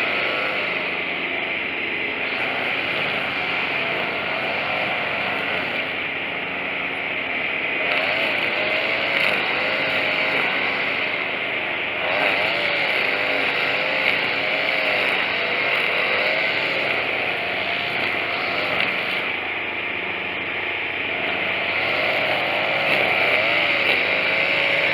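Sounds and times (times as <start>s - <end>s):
string trimmer engine revving: 0.0s - 24.9s.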